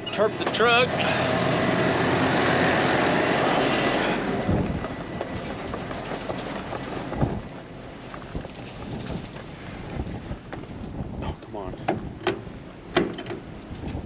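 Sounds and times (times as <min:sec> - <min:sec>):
scattered clicks and knocks: 0:04.7 - 0:09.5, 0:11.9 - 0:13.9
tarp rattling rush: 0:05.3 - 0:07.4.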